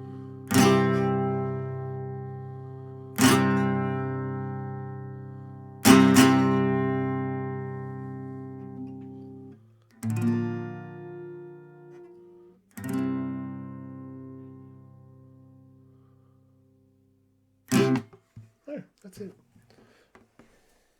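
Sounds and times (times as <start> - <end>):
acoustic guitar chords strummed: 0.0 - 16.0, 17.7 - 18.2.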